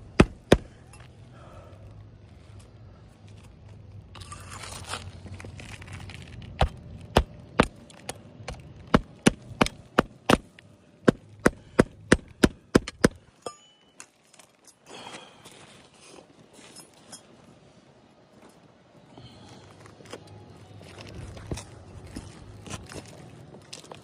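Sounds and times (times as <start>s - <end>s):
hammer tapping roofing nails: 0.1s - 0.7s.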